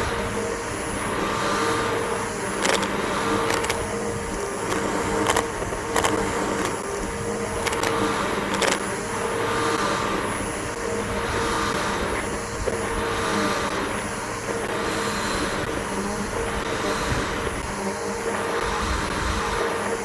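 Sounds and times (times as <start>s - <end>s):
sharp clicks: 2.6s - 8.9s.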